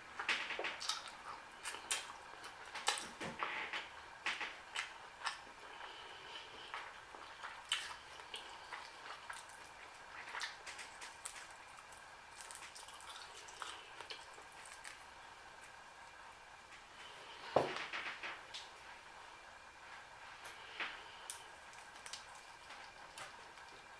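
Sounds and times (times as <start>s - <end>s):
person chewing with mouth smacking: 0.6s - 3.2s, 4.7s - 15.8s, 21.2s - 23.9s.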